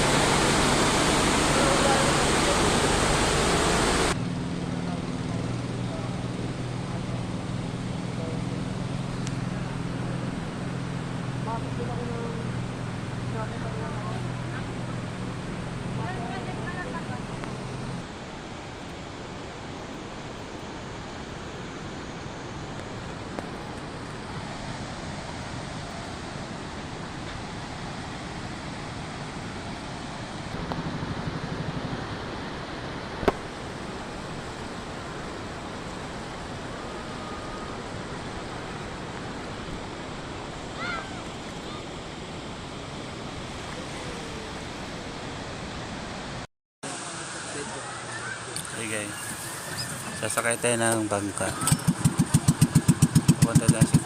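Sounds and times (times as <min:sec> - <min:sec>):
rushing river water: 0:00.0 - 0:54.0
wind: 0:00.0 - 0:54.0.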